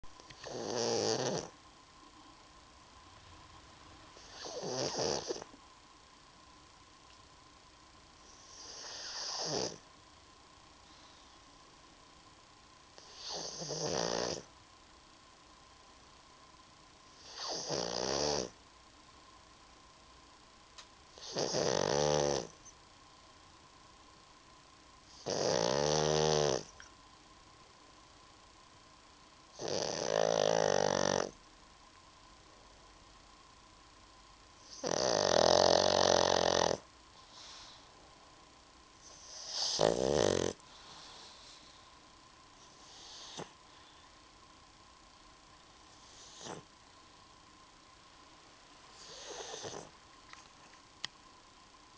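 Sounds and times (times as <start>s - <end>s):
dog snoring: 0.2s - 1.6s, 4.2s - 5.6s, 8.2s - 9.8s, 13.0s - 14.5s, 17.1s - 18.6s, 21.1s - 22.7s, 25.0s - 26.9s, 29.5s - 31.4s, 34.6s - 37.9s, 38.9s - 41.8s, 42.6s - 43.9s, 45.8s - 46.7s, 48.9s - 50.0s.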